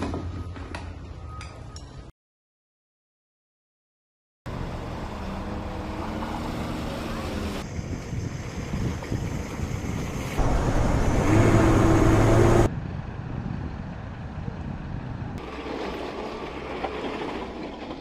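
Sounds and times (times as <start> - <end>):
wind noise: 7.6 - 15.4
vehicle engine running: 10.4 - 12.7.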